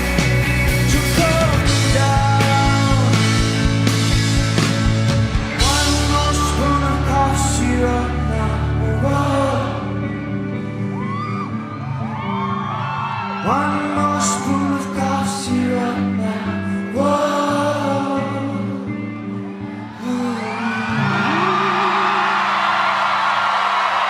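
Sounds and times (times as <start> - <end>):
man singing: 0.0 - 3.9, 5.4 - 10.6, 13.4 - 22.6
live rock band playing: 0.0 - 19.9
crowd cheering and whooping: 4.6 - 15.5, 19.2 - 24.0.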